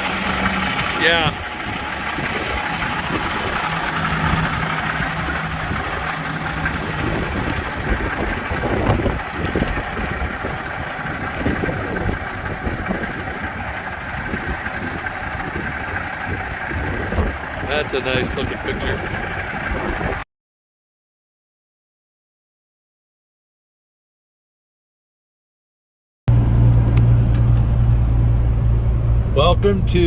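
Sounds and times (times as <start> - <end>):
road noise: 0.0 - 20.2, 26.3 - 30.0
truck engine running: 0.0 - 20.2, 26.3 - 30.0.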